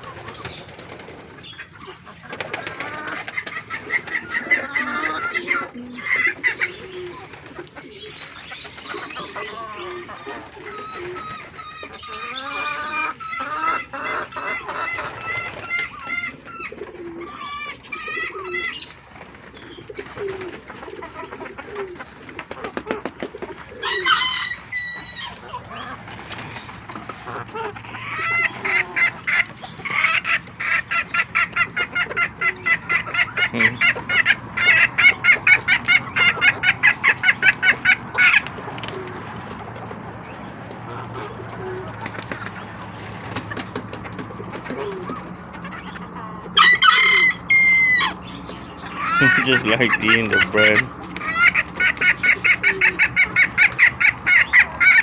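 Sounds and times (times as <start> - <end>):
pigeon cooing: 0.0 - 55.0
loud pitched bird call: 45.8 - 55.0.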